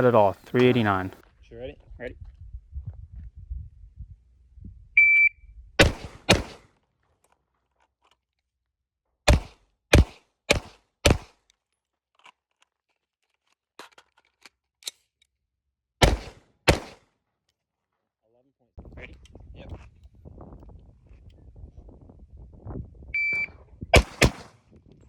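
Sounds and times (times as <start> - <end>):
shot timer beep: 5.0 - 5.3
pistol shots: 5.8 - 6.6, 9.3 - 11.3, 16.0 - 17.0, 24.0 - 24.6
rifle shots: 5.8 - 6.6, 9.3 - 11.3, 16.0 - 17.0, 24.0 - 24.6
metallic clicks of rifle reload: 13.3 - 15.3.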